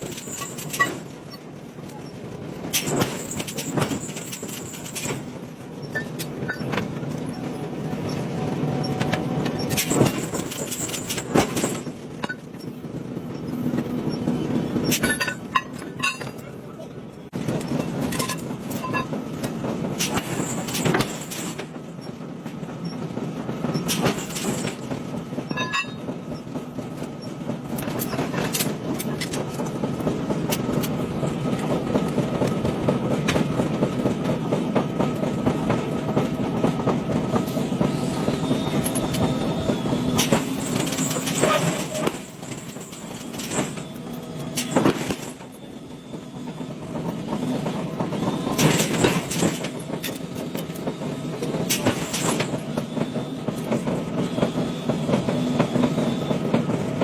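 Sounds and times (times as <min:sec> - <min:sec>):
metal clanks and bangs: 0:14.8 - 0:16.6.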